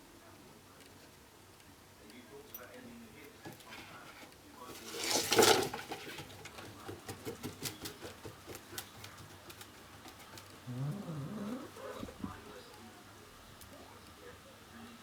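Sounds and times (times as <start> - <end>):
paws tapping on exercise wheel: 3.5 - 12.6.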